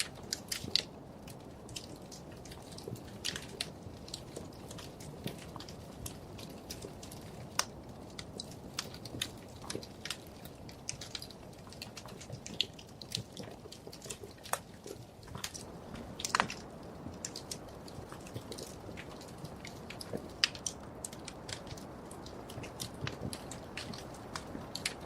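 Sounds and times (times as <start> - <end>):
wood fire crackling: 0.0 - 25.0.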